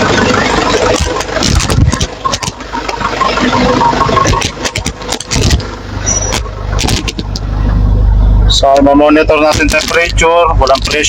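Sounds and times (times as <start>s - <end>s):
diesel engine idling: 0.0s - 11.0s
sharp clicks and knocks: 0.7s - 7.5s, 9.5s - 11.0s.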